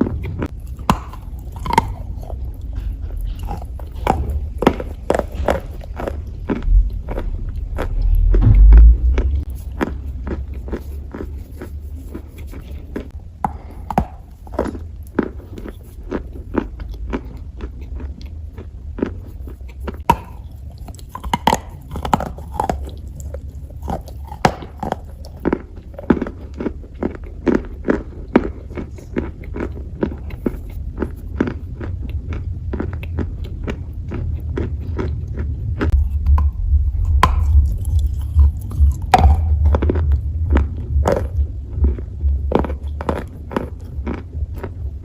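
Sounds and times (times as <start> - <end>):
chewing dry clay crunches: 0.0 - 45.0
low rumble: 0.0 - 45.0
loud low thump: 8.0 - 9.5.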